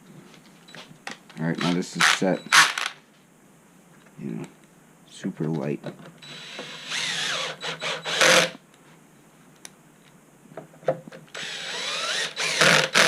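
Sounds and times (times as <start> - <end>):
drill whirring: 1.6 - 3.0, 6.2 - 8.6, 11.3 - 13.0.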